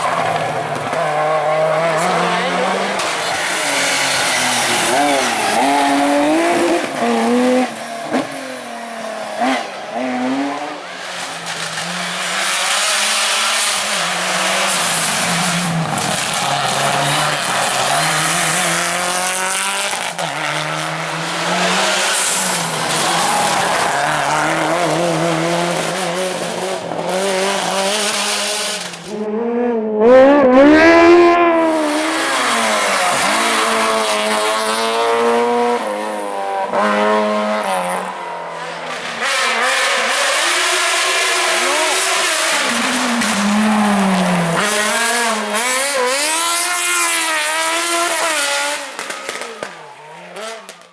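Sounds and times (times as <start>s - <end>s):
racing car engines revving: 0.0s - 50.9s
tyre squeal: 32.2s - 33.9s.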